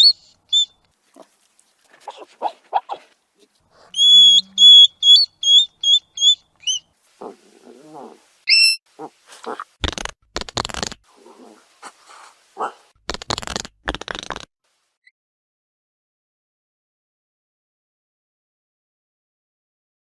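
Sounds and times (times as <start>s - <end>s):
hedgehog chirping: 0.0s - 1.3s, 1.9s - 3.2s, 3.8s - 14.4s
hedgehog snuffling: 0.9s - 5.6s, 6.2s - 14.4s.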